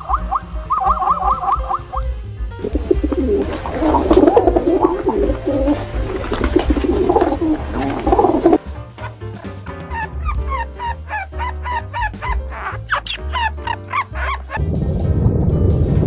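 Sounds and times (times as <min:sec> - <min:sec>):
birds cooing: 0:00.0 - 0:08.6
rising bird call: 0:00.0 - 0:08.6
background music: 0:00.0 - 0:16.0.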